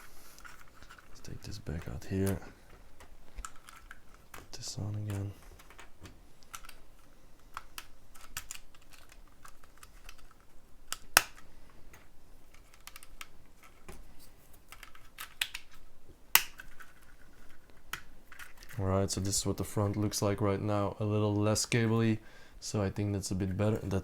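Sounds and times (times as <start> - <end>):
plastic bricks clicking and tapping: 0.4 - 14.0, 14.6 - 18.8
sharp plastic snaps: 0.4 - 14.0, 14.6 - 18.8.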